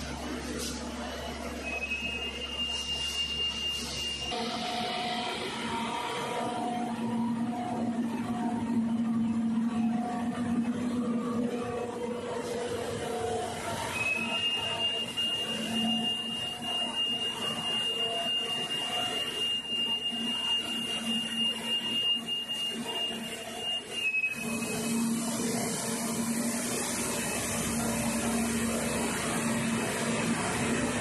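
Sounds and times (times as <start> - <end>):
factory machinery running: 0.0 - 31.0
high-pitched machine whine: 0.0 - 31.0.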